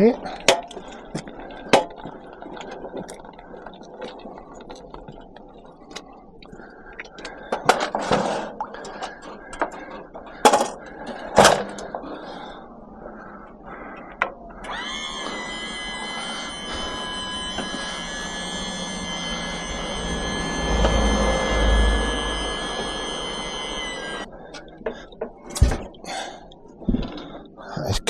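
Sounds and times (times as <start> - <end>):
pitched mechanical hum: 13.2 - 25.9.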